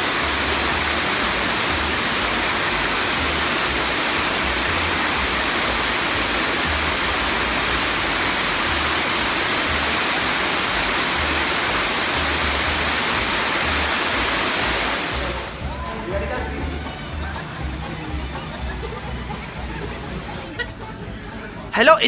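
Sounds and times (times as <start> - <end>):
rushing water: 0.0 - 15.7.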